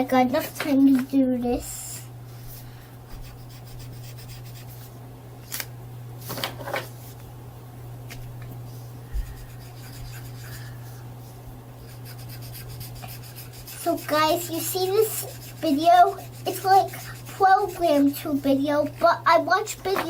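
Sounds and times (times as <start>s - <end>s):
steady low hum: 0.0s - 20.0s
pen scratching on paper: 9.3s - 10.6s, 11.8s - 18.4s.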